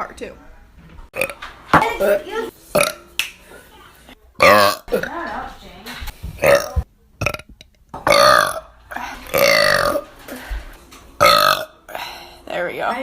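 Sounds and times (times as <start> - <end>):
person burping loudly: 1.2 - 1.4, 2.8 - 3.0, 4.4 - 5.1, 6.4 - 8.7, 9.3 - 10.1, 11.2 - 12.0.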